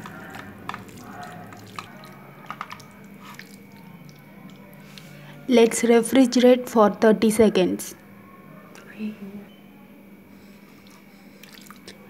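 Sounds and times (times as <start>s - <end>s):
wet squishing of marinade: 0.0s - 5.4s, 10.8s - 12.0s.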